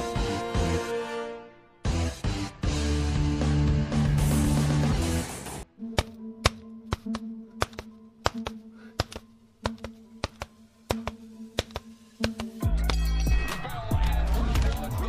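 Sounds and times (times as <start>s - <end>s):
music: 0.0s - 15.0s.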